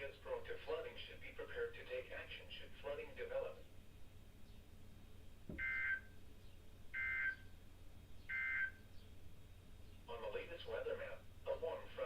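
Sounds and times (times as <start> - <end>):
soft thump: 5.4 - 5.6
two-tone digital data screech: 5.6 - 6.1.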